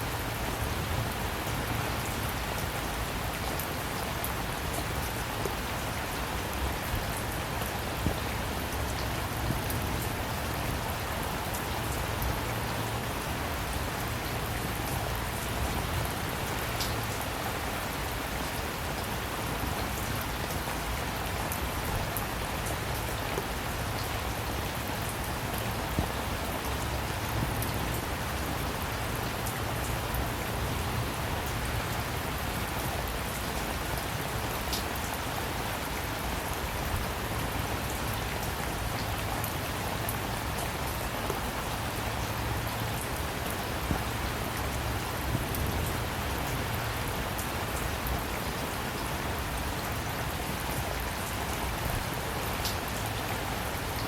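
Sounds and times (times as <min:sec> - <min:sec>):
steady rain hiss: 0:00.0 - 0:54.0.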